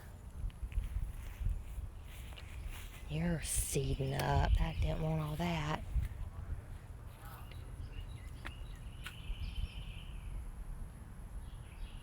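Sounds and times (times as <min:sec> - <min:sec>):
steady low rumble: 0:00.0 - 0:11.5
bird chirps: 0:07.3 - 0:10.4.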